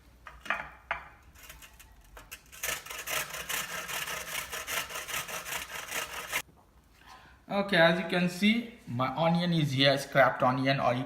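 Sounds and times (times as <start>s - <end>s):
onion being grated: 1.3s - 6.4s.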